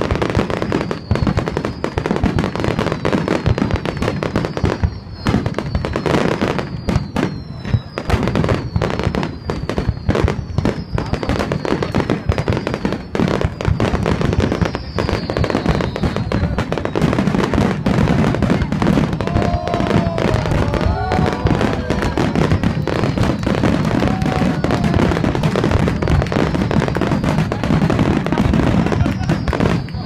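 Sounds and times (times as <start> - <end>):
fireworks bangs and crackles: 0.0 - 30.0
high falling whistles: 19.1 - 27.4.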